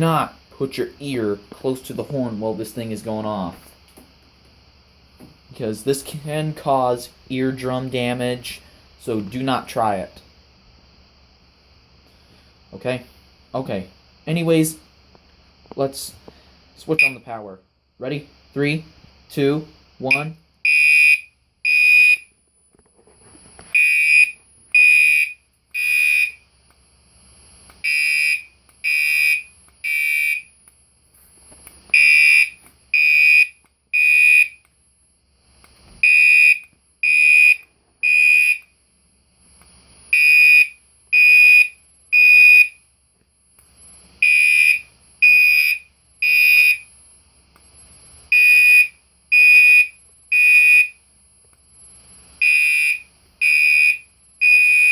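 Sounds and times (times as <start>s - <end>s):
fire alarm horn blasts: 20.1s - 22.3s, 23.7s - 26.4s, 27.8s - 30.6s, 31.9s - 34.7s, 36.0s - 38.7s, 40.1s - 42.8s, 44.2s - 46.9s, 48.3s - 51.0s, 52.4s - 54.9s.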